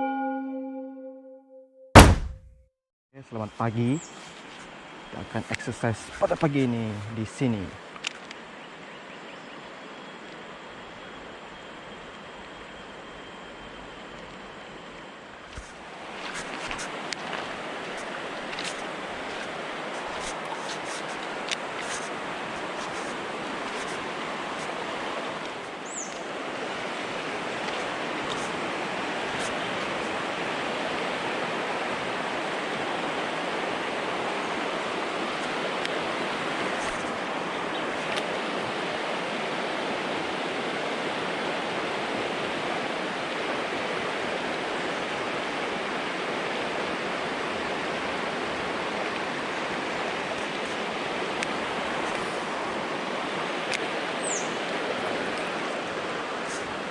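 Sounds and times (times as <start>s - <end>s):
stream water rushing: 15.7s - 56.9s.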